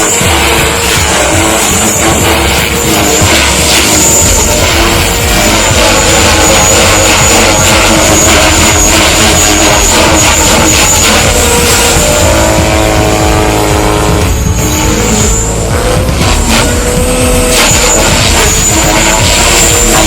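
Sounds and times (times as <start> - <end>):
helicopter rotor noise: 0.0 - 20.0
high motor whine: 0.0 - 20.0.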